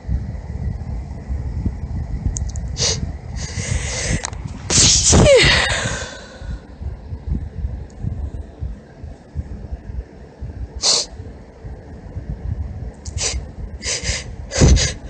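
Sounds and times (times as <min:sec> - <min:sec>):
hitching in-breaths: 0:02.8 - 0:06.7.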